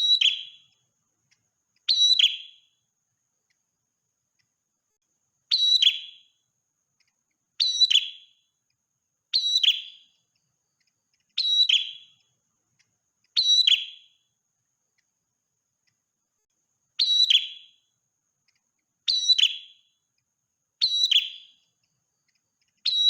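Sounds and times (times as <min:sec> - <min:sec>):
bird chirping call: 0:00.0 - 0:02.8, 0:05.5 - 0:06.4, 0:07.0 - 0:08.5, 0:09.3 - 0:14.3, 0:17.0 - 0:20.0, 0:20.8 - 0:23.0.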